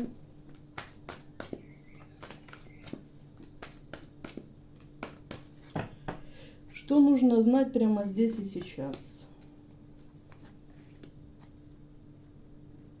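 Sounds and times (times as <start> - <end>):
cards being shuffled: 0.0 - 5.7, 10.0 - 11.8
faint steady hum: 0.0 - 13.0.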